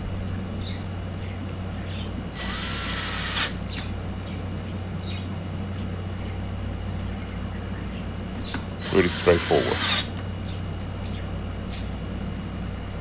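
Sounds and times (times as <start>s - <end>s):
power drill whining: 2.4s - 3.6s, 8.8s - 10.2s.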